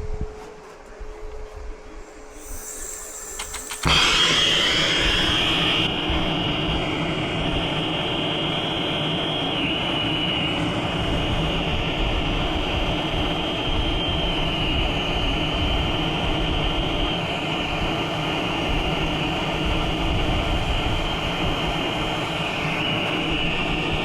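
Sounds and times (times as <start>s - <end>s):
thin high whistle: 2.0s - 6.1s
torch flame hissing: 2.3s - 6.2s.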